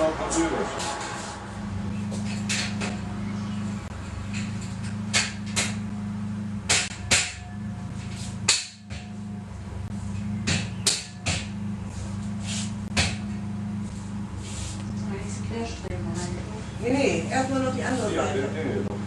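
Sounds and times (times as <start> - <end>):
low hum: 0.6 - 19.0
hammer knocking: 10.4 - 11.6.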